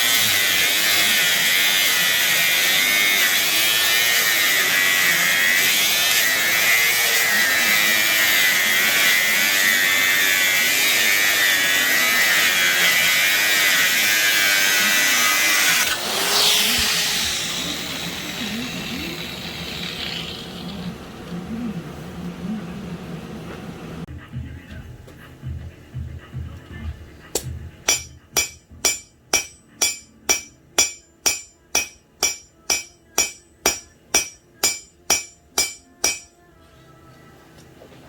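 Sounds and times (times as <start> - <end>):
power tool high whine: 0.0 - 20.9.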